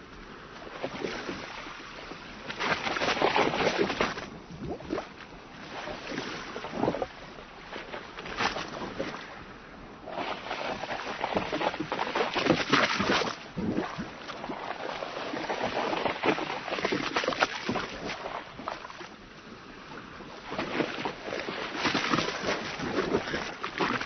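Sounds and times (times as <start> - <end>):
waves splashing along boat hull: 0.0 - 24.0.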